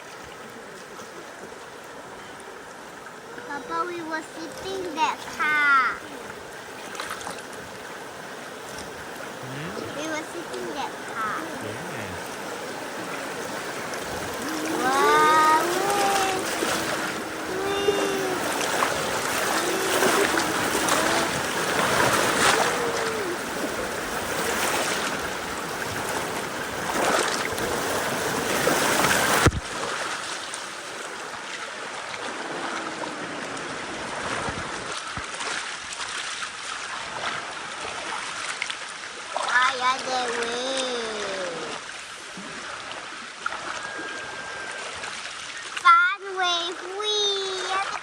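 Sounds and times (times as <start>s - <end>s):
river water rushing and splashing: 0.0s - 48.0s
person exclaiming: 14.4s - 18.7s, 19.4s - 21.5s, 22.4s - 23.6s.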